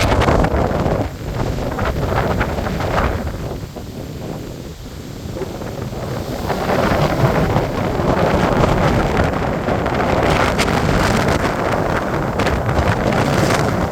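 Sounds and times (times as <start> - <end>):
strong wind on microphone: 0.0 - 13.9.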